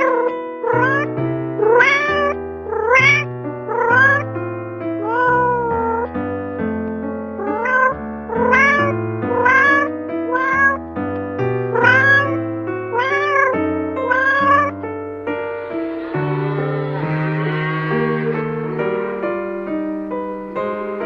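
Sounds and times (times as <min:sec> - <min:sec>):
cat meowing: 0:00.0 - 0:04.3, 0:05.0 - 0:06.1, 0:07.4 - 0:10.8, 0:11.8 - 0:12.3, 0:12.9 - 0:13.5, 0:14.1 - 0:14.7, 0:15.5 - 0:20.0
piano music: 0:00.0 - 0:21.0.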